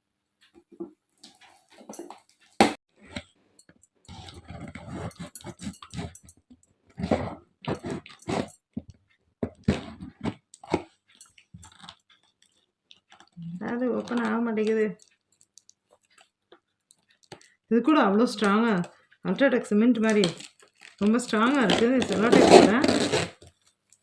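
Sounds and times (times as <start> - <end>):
packing tape ripping: 20.1 - 23.5.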